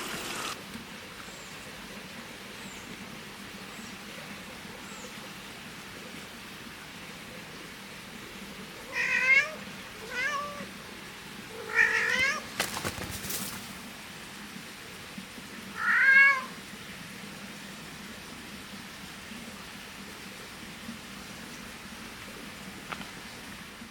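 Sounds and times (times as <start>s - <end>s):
cat meowing: 8.9s - 10.7s, 11.5s - 12.5s, 15.8s - 16.6s.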